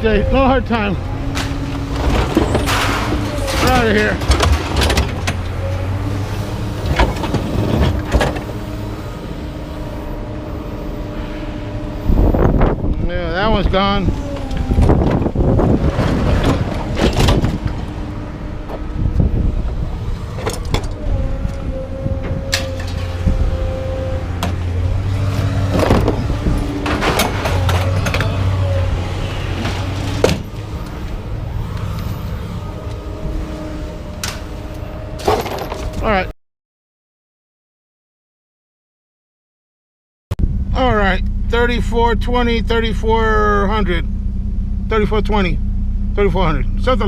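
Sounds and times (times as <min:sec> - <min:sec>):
vehicle engine humming: 0:00.0 - 0:36.3, 0:40.3 - 0:47.0
vehicle engine idling: 0:40.4 - 0:47.0.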